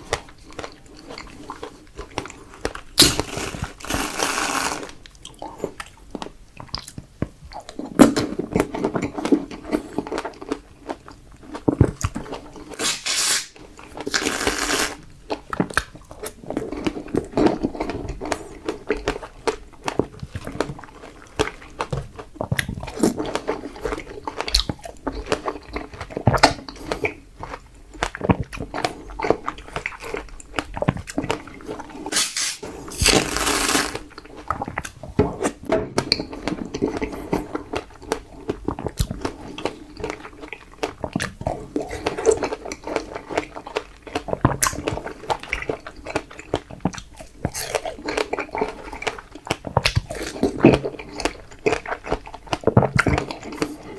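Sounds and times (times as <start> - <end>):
biting and wet chewing: 0.0 - 53.9.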